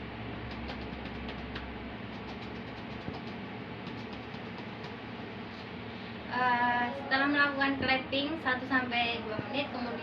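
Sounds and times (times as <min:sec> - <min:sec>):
room noise: 0:00.0 - 0:10.0
cupped hands patting a back: 0:00.4 - 0:05.0.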